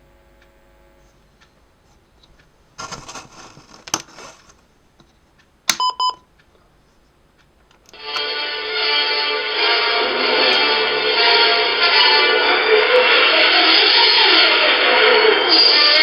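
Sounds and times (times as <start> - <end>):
handling rustle: 1.8 - 5.2
switch clicks: 5.0 - 6.5.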